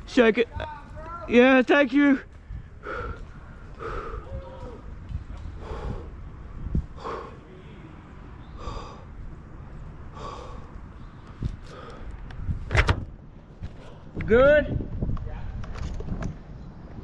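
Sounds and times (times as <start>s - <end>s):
person breathing heavily: 2.3s - 4.8s, 5.4s - 7.7s, 8.4s - 9.3s, 10.0s - 12.3s.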